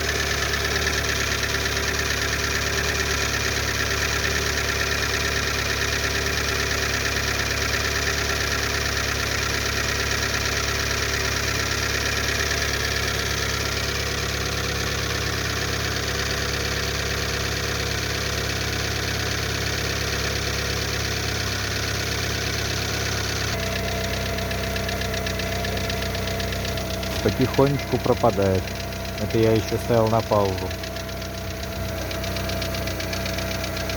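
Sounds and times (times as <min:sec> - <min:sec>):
car engine idling: 0:00.0 - 0:33.9
engine knocking: 0:00.0 - 0:33.9
loud exhaust: 0:23.3 - 0:33.9.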